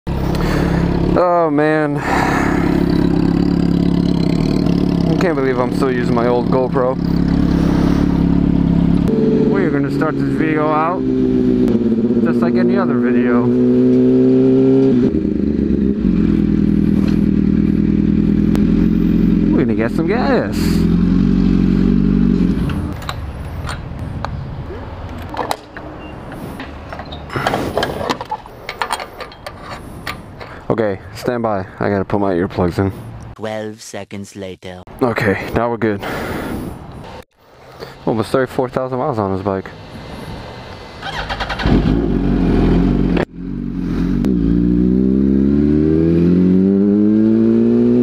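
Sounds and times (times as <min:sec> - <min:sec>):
motorcycle engine running: 0:00.1 - 0:01.4, 0:02.3 - 0:23.0.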